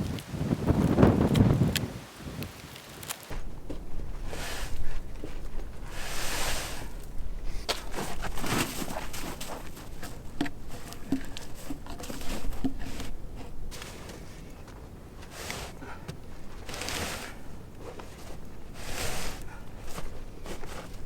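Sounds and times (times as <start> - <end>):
footsteps on forest floor: 0.0 - 21.0
log knocking and thudding: 3.0 - 5.9, 7.0 - 14.1.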